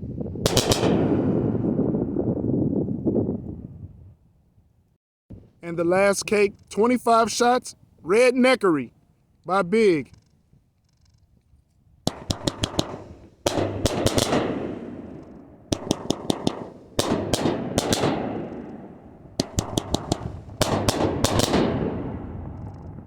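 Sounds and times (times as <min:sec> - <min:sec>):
fireworks cracking: 0:12.1 - 0:15.2, 0:15.8 - 0:22.6.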